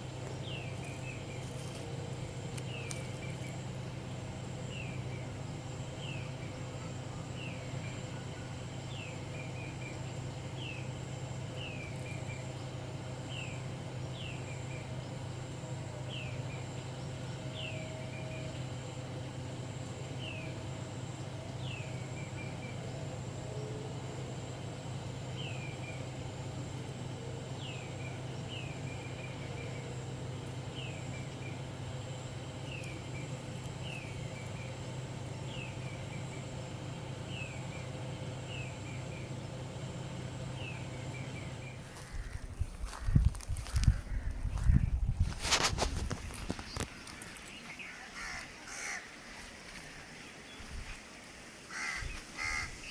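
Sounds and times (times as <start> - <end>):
steady low hum: 0.0 - 52.9
bird calling: 46.6 - 50.7, 51.7 - 52.9.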